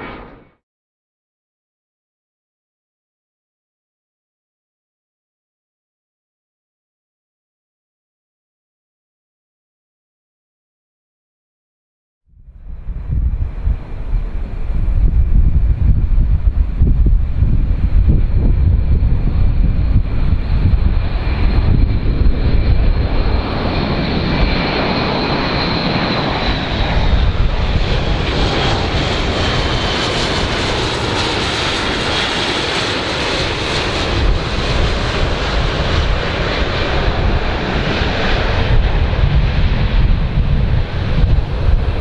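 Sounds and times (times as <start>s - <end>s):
airplane engines rumbling and whining: 0.0s - 0.6s, 12.4s - 42.0s.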